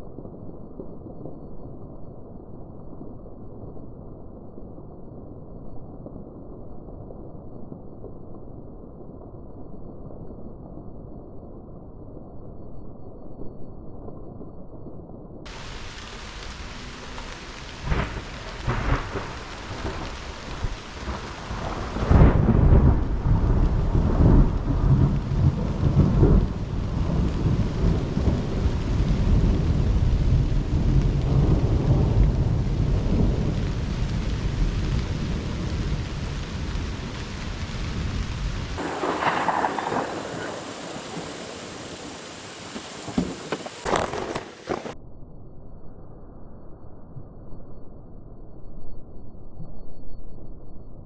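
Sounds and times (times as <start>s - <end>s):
rain falling: 15.5s - 45.0s
thunder cracks and rumble: 15.5s - 45.0s.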